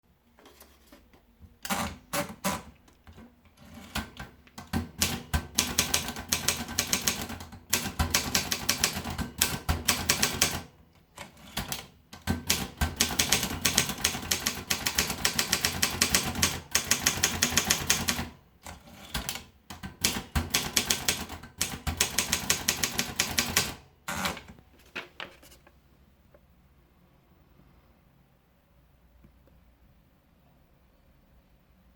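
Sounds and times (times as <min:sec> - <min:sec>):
typewriter keys striking: 0:03.9 - 0:10.7, 0:11.6 - 0:18.3, 0:19.1 - 0:24.5.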